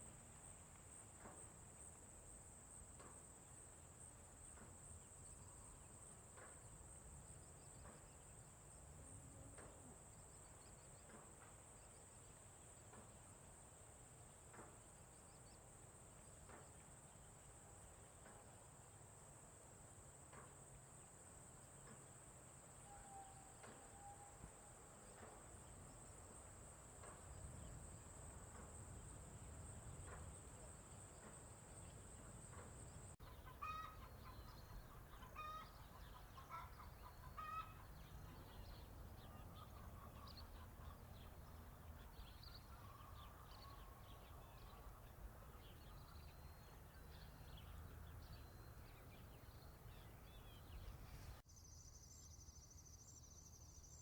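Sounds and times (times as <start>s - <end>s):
small birds chirping: 28.8s - 54.0s
chickens clucking: 33.2s - 41.4s.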